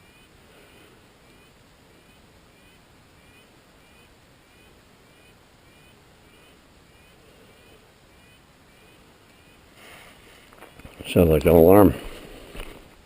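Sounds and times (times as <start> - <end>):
animal alarm calls: 0.0 - 9.7.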